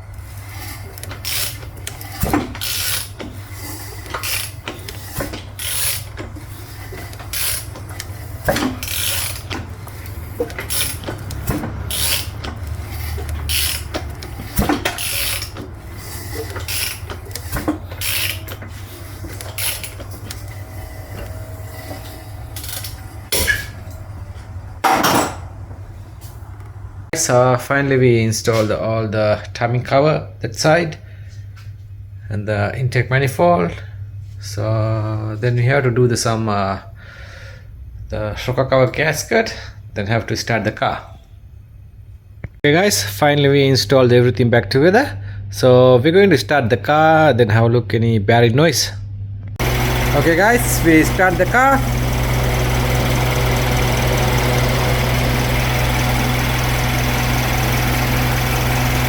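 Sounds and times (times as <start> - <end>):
steady low hum: 0.0 - 27.4, 49.6 - 59.0
ratchet wrench clicking: 0.5 - 18.6, 19.2 - 20.5.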